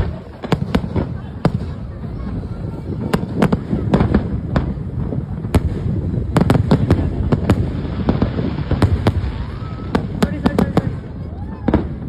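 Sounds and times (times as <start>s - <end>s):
fireworks bangs: 0.0s - 12.0s
low rumble of distant fireworks: 0.0s - 12.0s.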